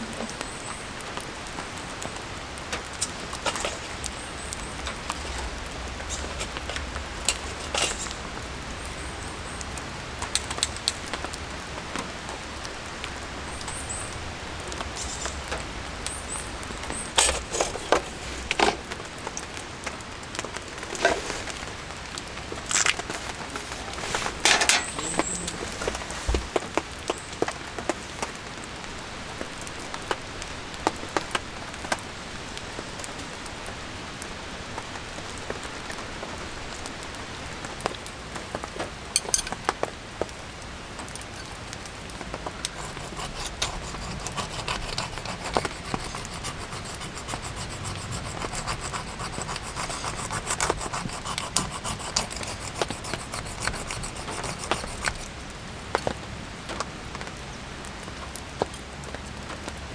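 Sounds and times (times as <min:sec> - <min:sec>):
rain pattering: 0:00.0 - 0:49.2, 0:54.1 - 0:59.9
rasping scraping: 0:02.8 - 0:08.6, 0:14.8 - 0:15.6, 0:16.3 - 0:26.8, 0:39.2 - 0:39.6, 0:42.4 - 0:56.1.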